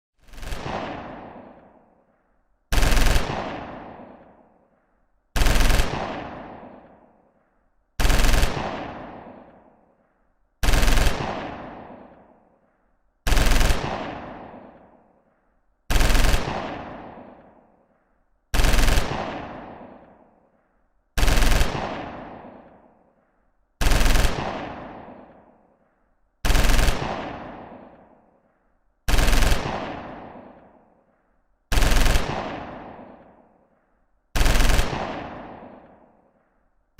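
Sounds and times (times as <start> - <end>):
machine gun firing bursts: 0.2 - 1.8, 2.7 - 4.5, 5.4 - 7.2, 8.0 - 9.8, 10.6 - 12.5, 13.3 - 15.1, 15.9 - 17.7, 18.5 - 20.3, 21.2 - 23.0, 23.8 - 25.6, 26.4 - 28.2, 29.1 - 30.9, 31.7 - 33.6, 34.4 - 36.3.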